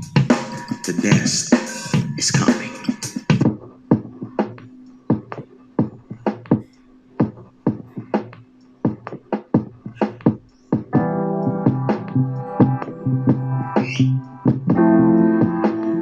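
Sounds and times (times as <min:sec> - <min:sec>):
electronic music from small speaker: 0:00.0 - 0:16.0.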